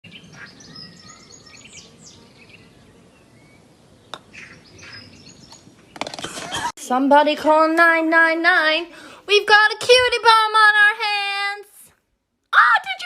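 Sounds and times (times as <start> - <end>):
small birds chirping: 0.0 - 6.3.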